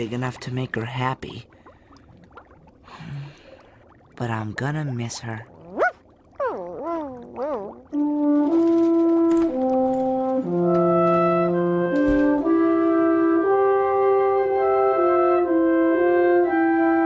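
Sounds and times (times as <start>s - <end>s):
slow brass melody: 7.9s - 17.0s.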